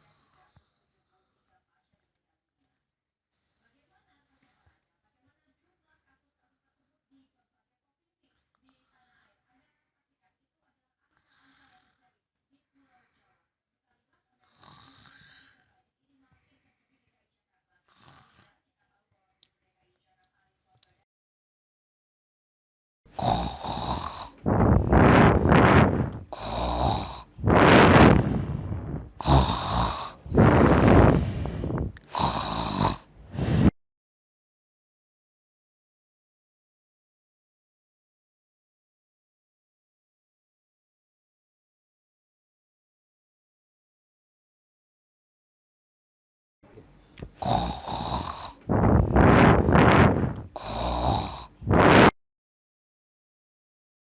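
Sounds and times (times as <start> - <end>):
person snoring loudly: 23.1 - 33.8, 47.3 - 52.2.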